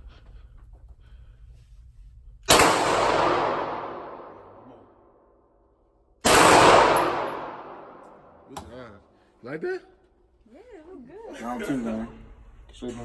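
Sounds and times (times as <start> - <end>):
gunshots echoing: 2.5 - 4.8, 6.2 - 8.5.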